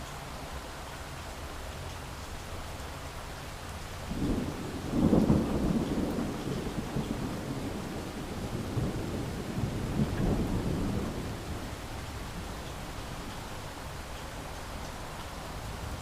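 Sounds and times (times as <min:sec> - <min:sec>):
steady rain: 0:00.0 - 0:16.0
thunder rumbling: 0:04.1 - 0:12.6.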